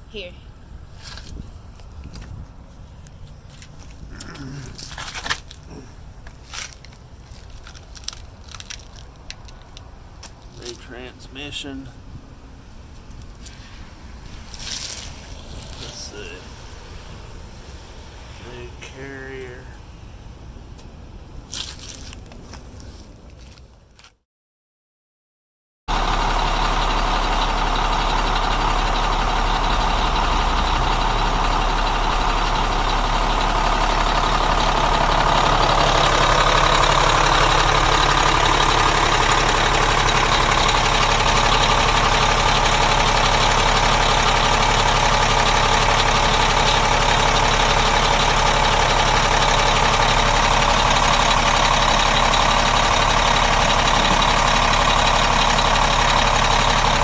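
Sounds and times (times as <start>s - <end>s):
truck engine idling: 0.0s - 21.5s, 25.9s - 57.0s.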